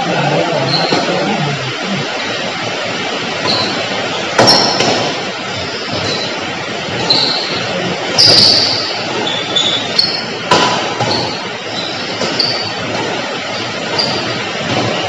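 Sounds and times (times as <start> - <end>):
shoes squeaking on court: 0.6 - 1.4, 3.4 - 4.9, 5.6 - 10.3, 11.0 - 15.0
racket striking shuttlecock: 10.5 - 11.4.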